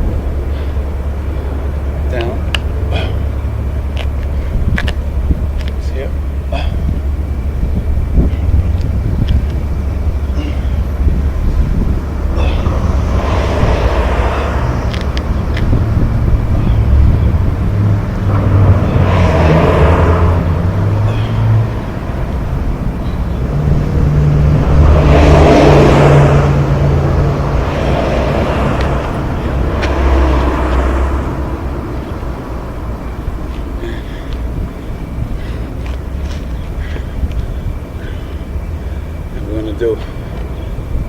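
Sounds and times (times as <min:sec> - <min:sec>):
low engine hum of traffic: 0:00.0 - 0:41.0
vehicles passing: 0:00.0 - 0:41.0.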